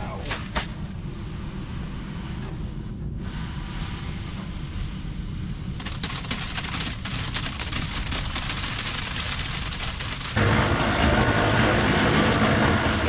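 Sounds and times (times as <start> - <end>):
engine rumbling: 0.0 - 13.0
crackling hiss: 5.8 - 10.4.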